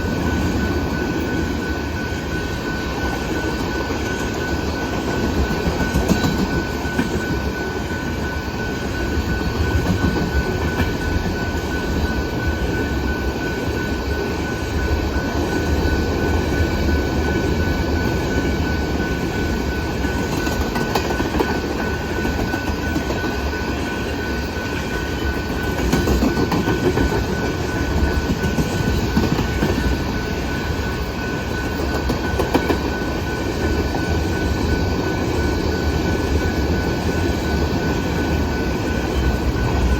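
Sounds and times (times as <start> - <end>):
freight train rumbling past: 0.0 - 39.9.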